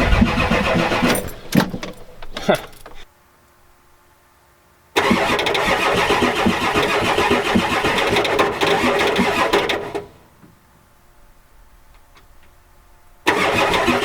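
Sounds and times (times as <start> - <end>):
diesel engine cranking without starting: 0.0 - 3.1, 5.0 - 10.3, 13.2 - 14.0.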